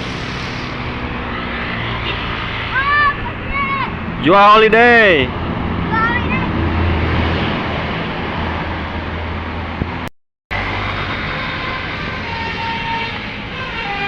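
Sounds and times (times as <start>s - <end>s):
bus engine running: 0.0s - 14.0s
road noise: 0.0s - 14.0s
multi-tone bus horn: 10.8s - 14.0s.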